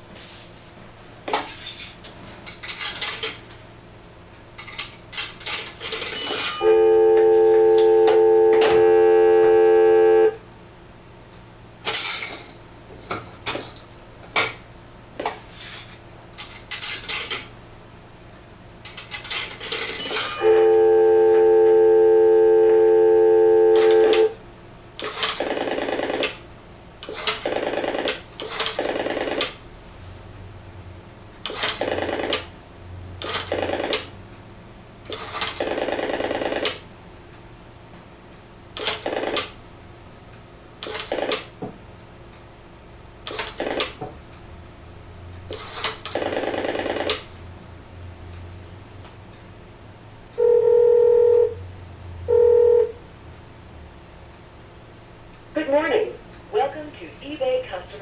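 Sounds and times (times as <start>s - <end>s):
payphone mechanism clicks and rattles: 4.6s - 6.7s, 18.9s - 20.6s, 23.8s - 24.3s
steady electronic tone: 6.6s - 10.4s, 20.4s - 24.4s.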